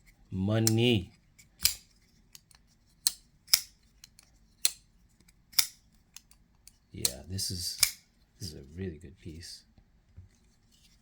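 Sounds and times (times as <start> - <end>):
folding knife clicking: 1.6 - 4.8, 5.5 - 7.2, 7.8 - 8.0.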